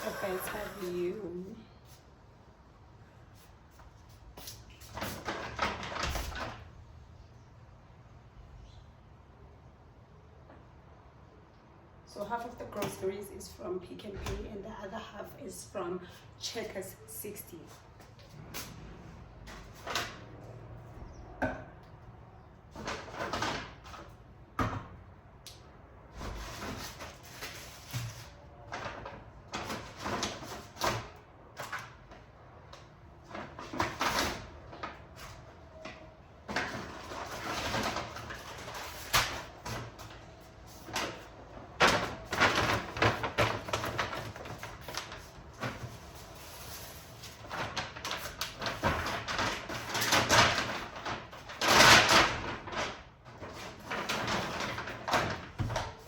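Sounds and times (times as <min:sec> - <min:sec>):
plastic bags rustling: 0:33.2 - 0:56.0.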